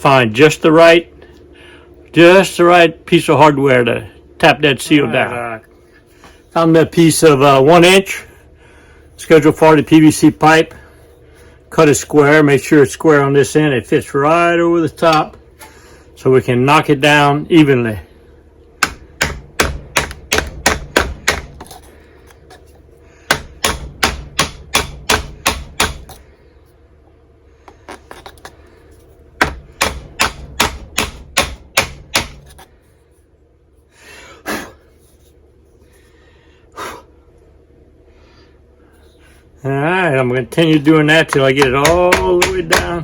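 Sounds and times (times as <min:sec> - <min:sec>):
hammer tapping on plastic pipe: 0:18.8 - 0:21.7, 0:23.3 - 0:26.2, 0:29.4 - 0:32.5, 0:41.2 - 0:43.0.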